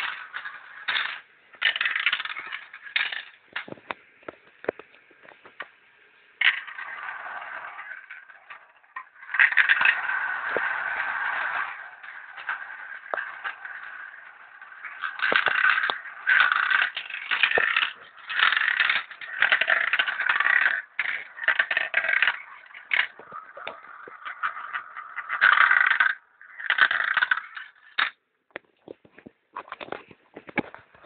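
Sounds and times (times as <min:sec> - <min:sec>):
marbles clicking on track: 0:00.0 - 0:04.9, 0:06.4 - 0:28.6
marbles rolling down marble run: 0:00.0 - 0:05.8, 0:06.4 - 0:28.2, 0:28.8 - 0:31.0.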